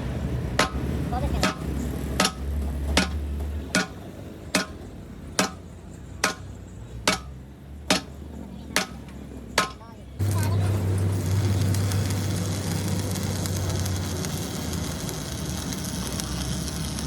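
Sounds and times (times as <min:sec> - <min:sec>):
hammer striking metal: 0:00.5 - 0:08.2, 0:08.8 - 0:09.0, 0:09.6 - 0:09.8.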